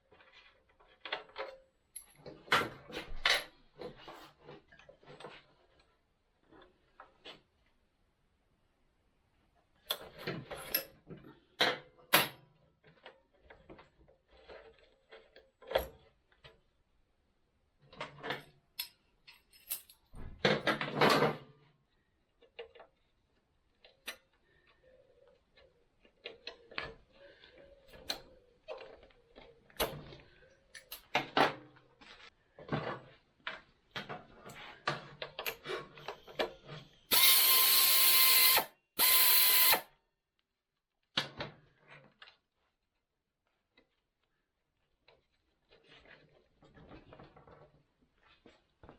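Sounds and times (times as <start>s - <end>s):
power tool whining: 37.1s - 39.8s.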